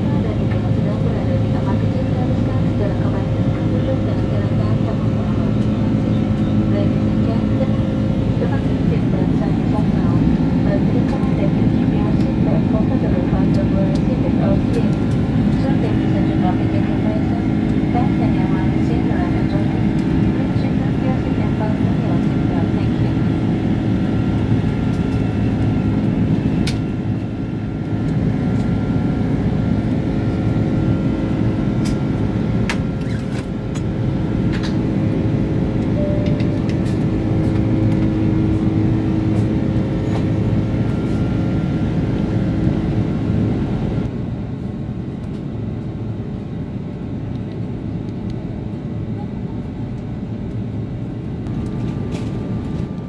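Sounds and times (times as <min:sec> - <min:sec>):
engines and airflow rumble: 0:00.0 - 0:53.0
faint whine tones: 0:35.8 - 0:39.3.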